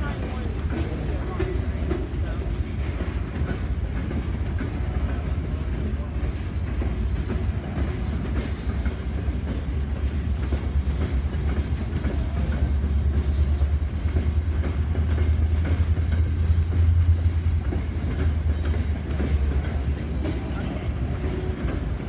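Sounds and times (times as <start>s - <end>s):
locomotive engine rumble: 0.0s - 22.0s
railcars rolling clatter: 0.0s - 22.0s.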